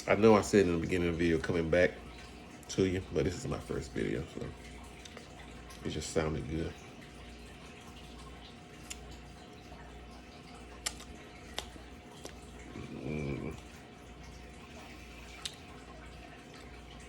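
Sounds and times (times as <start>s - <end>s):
low room hum: 0.0s - 17.0s
person humming: 12.7s - 13.7s.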